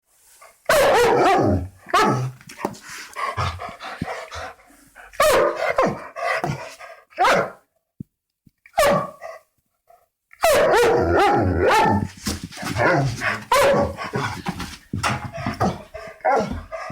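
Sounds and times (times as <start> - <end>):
large dog barking: 0.7 - 2.4, 5.2 - 7.6, 8.8 - 9.4, 10.4 - 16.9.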